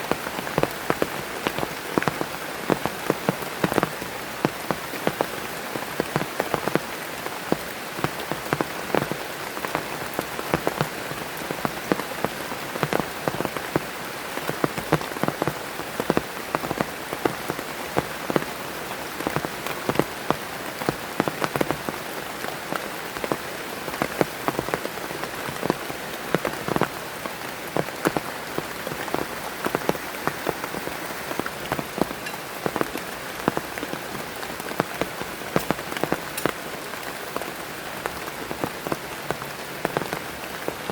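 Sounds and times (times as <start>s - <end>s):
heavy rain falling: 0.0s - 40.9s
raindrops striking close by: 0.0s - 40.9s.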